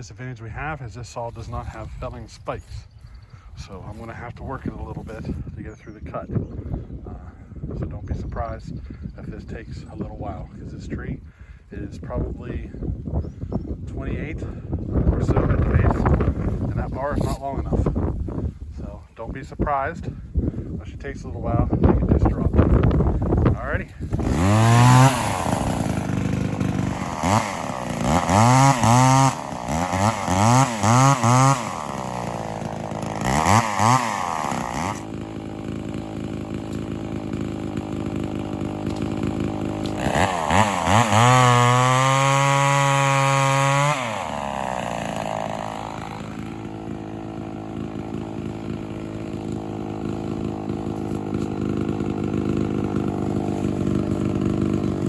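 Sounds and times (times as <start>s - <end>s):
chainsaw revving and idling: 3.6s - 5.4s, 13.9s - 18.1s, 20.8s - 55.0s.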